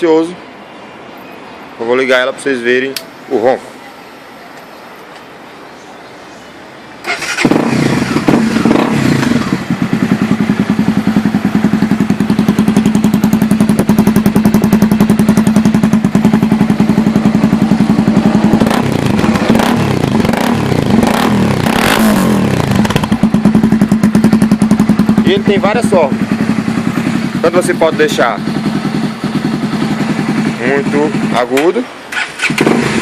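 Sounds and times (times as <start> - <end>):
motorcycle engine revving: 7.0 - 33.0
motorcycle engine starting and idling: 7.0 - 33.0.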